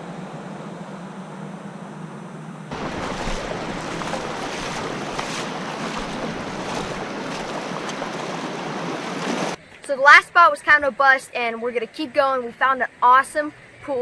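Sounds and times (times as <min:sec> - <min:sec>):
river water rushing over rapids: 0:02.7 - 0:09.6.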